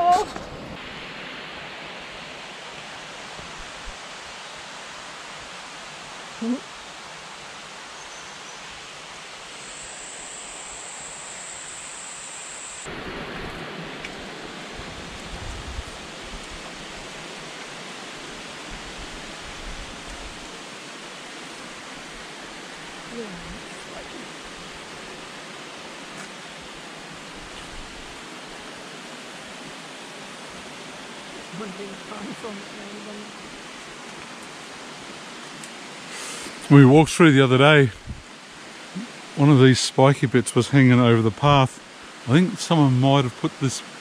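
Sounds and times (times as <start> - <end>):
creek water flowing: 12.8 - 44.0.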